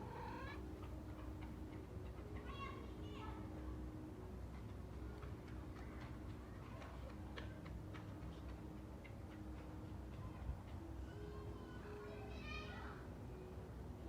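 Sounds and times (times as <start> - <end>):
low background hum: 0.0 - 14.0
faint clicks and ticks: 3.9 - 11.5.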